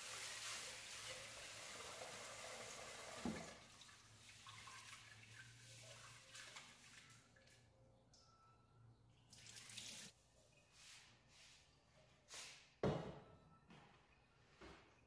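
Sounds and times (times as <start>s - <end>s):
water running from a tap: 0.0s - 7.0s, 9.4s - 10.1s
knock: 12.8s - 13.3s.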